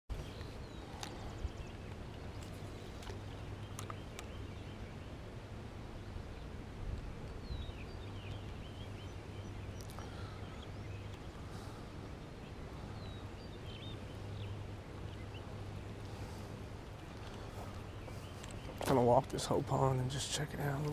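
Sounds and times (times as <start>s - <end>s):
steady low hum: 0.1s - 20.9s
bird chirps: 7.3s - 11.8s.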